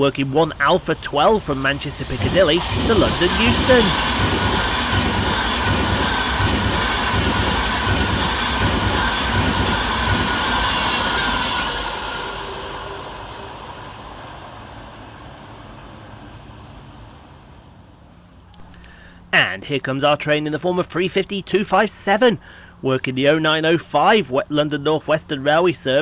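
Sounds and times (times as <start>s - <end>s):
electric train whine: 0.0s - 19.3s.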